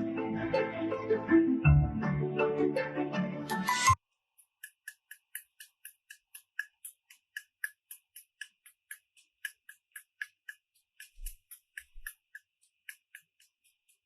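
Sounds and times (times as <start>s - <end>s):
rapid faint ticking: 4.4s - 14.0s.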